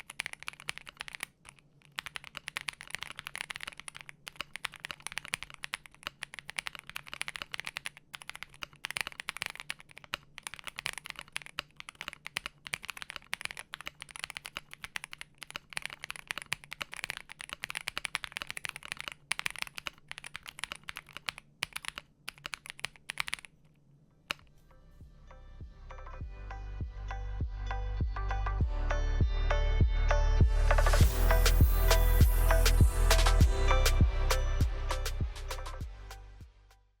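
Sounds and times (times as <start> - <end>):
mechanical keyboard typing: 0.0 - 23.6.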